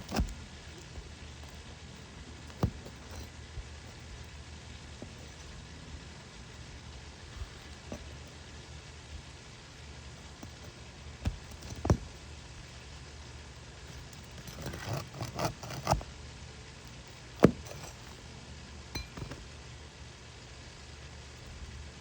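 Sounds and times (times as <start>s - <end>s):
hand tools knocking and clinking: 10.4s - 12.2s, 19.0s - 19.5s.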